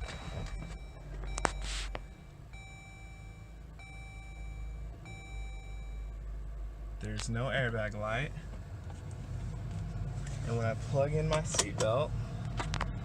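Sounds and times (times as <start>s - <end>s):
dashboard warning chime: 0.0s - 6.2s
car engine idling: 0.0s - 13.0s.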